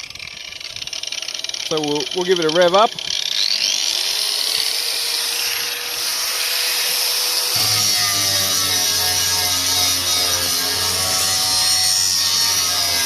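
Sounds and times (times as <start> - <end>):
angle grinder whining: 0.0 - 13.0
deeper hum: 7.5 - 13.0.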